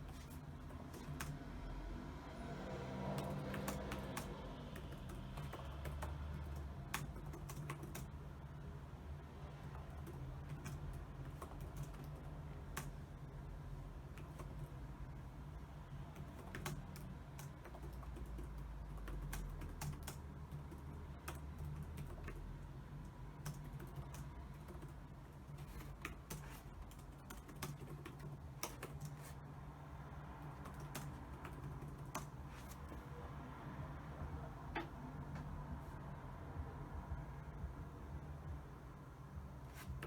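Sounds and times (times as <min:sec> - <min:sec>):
computer keyboard typing: 0:00.0 - 0:01.7, 0:03.0 - 0:08.7, 0:09.5 - 0:15.2, 0:15.9 - 0:33.1
low steady hum: 0:00.0 - 0:40.0.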